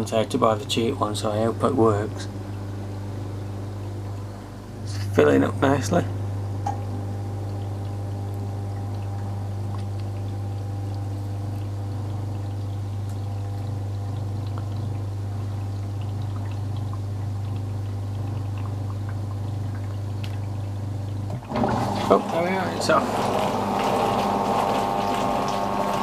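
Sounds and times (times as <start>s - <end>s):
dishwasher hum: 0.0s - 26.0s
water pouring into tub: 7.1s - 26.0s.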